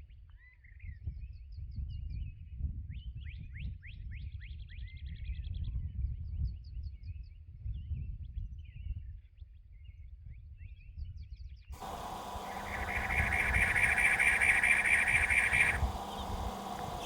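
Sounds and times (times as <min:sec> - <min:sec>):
faint bird chirps: 0:11.8 - 0:17.0
low wind rumble: 0:11.8 - 0:17.0.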